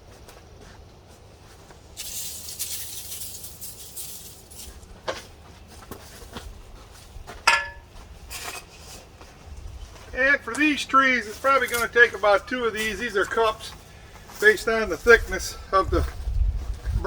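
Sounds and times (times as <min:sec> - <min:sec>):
pellets pouring with rattling hiss: 0:01.9 - 0:04.9
sharp ringing clink: 0:07.5 - 0:07.9.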